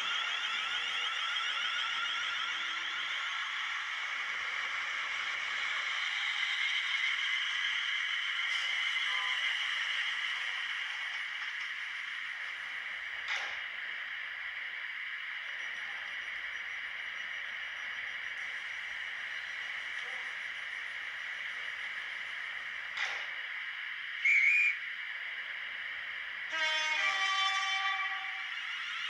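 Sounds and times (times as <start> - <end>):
short high train whistle: 24.2 - 24.8, 26.5 - 29.0
two-note train horn: 26.5 - 29.0.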